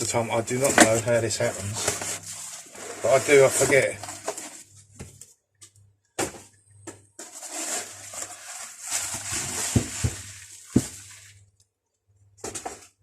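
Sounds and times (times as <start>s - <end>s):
packaging rustling: 0.0s - 5.3s, 7.2s - 11.3s.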